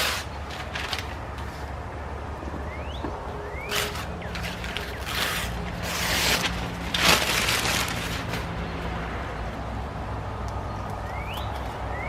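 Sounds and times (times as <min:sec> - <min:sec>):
paper tearing and crinkling: 0:00.0 - 0:01.7, 0:03.7 - 0:08.6.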